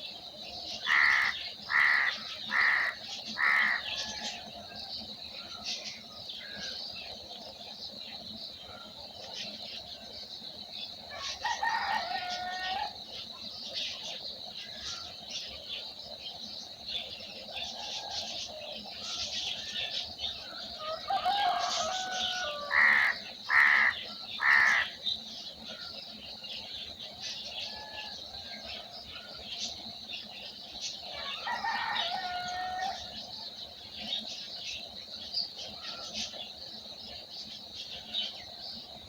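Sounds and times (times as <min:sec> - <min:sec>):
small birds chirping: 0:00.0 - 0:39.0
long loud bird call: 0:00.8 - 0:04.6, 0:11.1 - 0:13.0, 0:20.7 - 0:25.0, 0:31.1 - 0:33.4.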